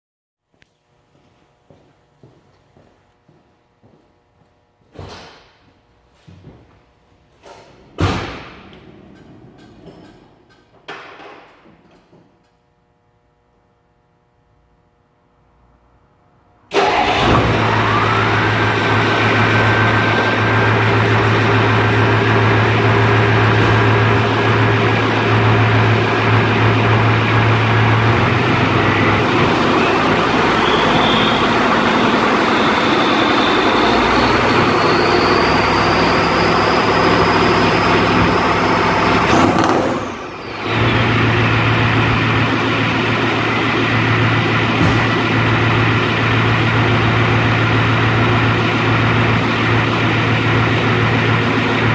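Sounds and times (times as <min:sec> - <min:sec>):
diesel engine running: 0:16.7 - 0:51.9
turbo whistle: 0:29.0 - 0:39.2.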